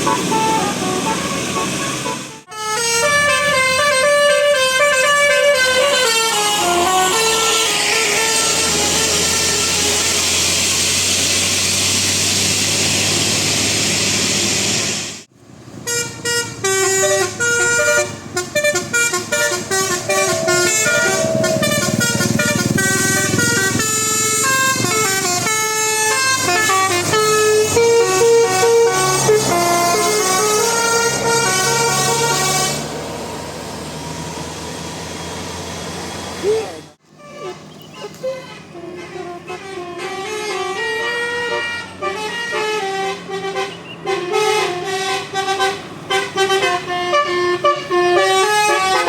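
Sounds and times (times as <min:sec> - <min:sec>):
bus multi-tone air horn tune: 0:00.0 - 0:10.9, 0:15.8 - 0:33.0, 0:37.0 - 0:49.0
loud steady rushing noise: 0:18.2 - 0:27.1.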